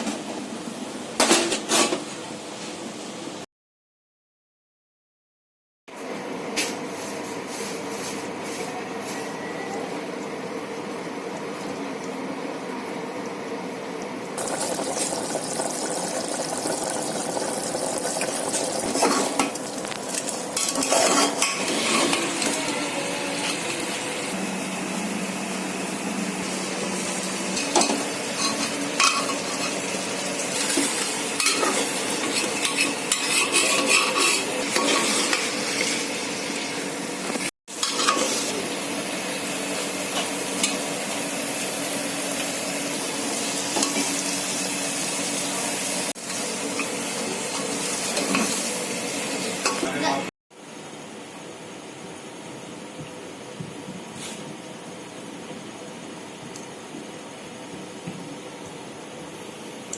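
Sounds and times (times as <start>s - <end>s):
food sizzling: 14.4s - 50.2s
spoon scraping cooking pot: 31.4s - 36.0s.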